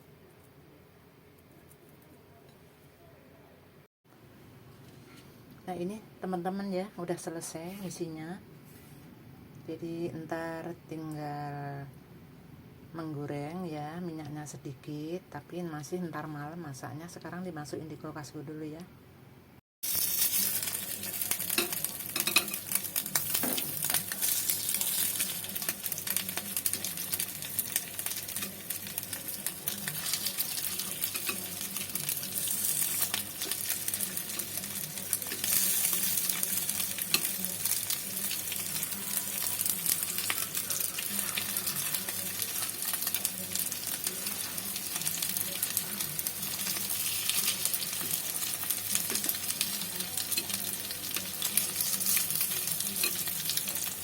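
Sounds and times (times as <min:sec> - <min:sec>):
tofu sizzling in oil: 0:19.8 - 0:54.0.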